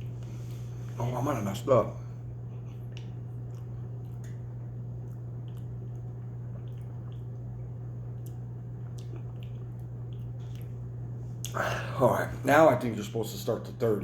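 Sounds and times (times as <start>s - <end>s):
low electrical hum: 0.0s - 14.0s
wet mouth chewing clicks: 2.5s - 11.6s.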